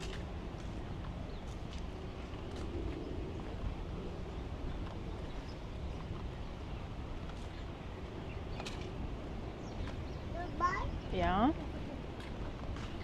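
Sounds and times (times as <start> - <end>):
shoreline rumble and hiss: 0.0 - 13.0.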